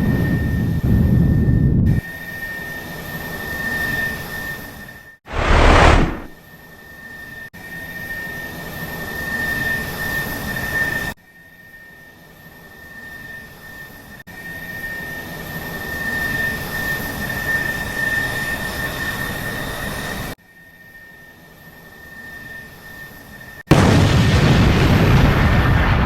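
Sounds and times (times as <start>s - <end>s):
jet engine rumble and whine: 5.3s - 6.3s, 14.3s - 20.4s.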